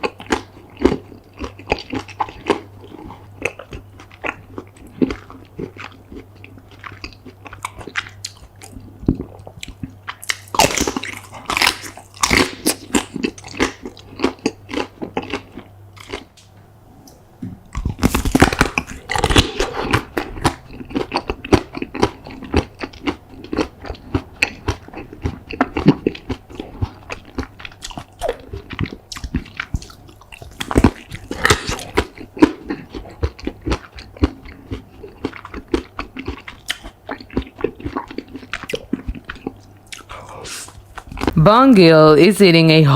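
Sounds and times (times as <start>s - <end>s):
chewing: 0.0s - 16.4s, 17.6s - 41.4s
crisp bites and crunches: 17.8s - 24.6s.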